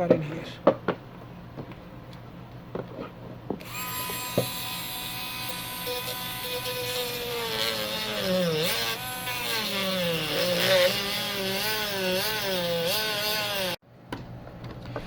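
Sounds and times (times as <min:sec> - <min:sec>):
rotary tool cutting plastic: 0:03.6 - 0:13.8.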